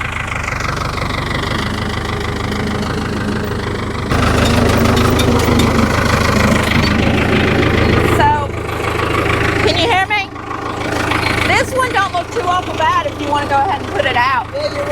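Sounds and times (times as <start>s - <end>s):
tractor engine idling: 0.0s - 14.9s.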